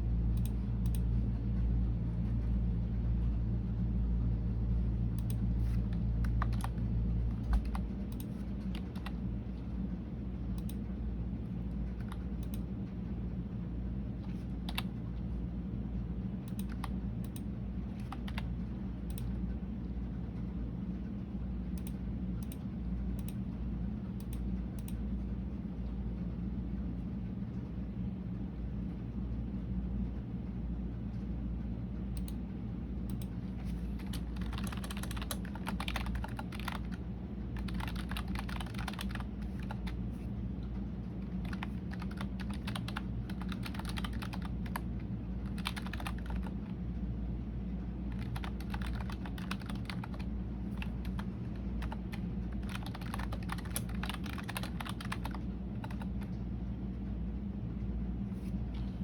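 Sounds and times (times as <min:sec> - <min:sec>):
steady low hum: 0:00.0 - 0:59.0
keyboard keystrokes clicking: 0:05.2 - 0:09.2, 0:16.5 - 0:17.4, 0:18.0 - 0:18.5, 0:34.0 - 0:37.0, 0:37.6 - 0:40.0, 0:41.4 - 0:44.8, 0:45.4 - 0:46.5, 0:48.1 - 0:56.3.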